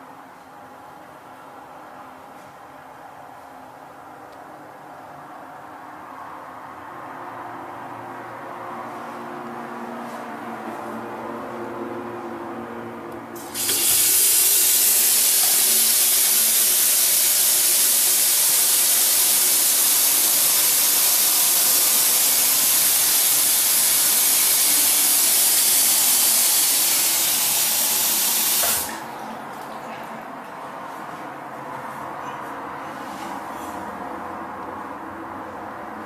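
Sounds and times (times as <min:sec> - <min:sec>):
loud spraying hiss: 0:13.4 - 0:28.9.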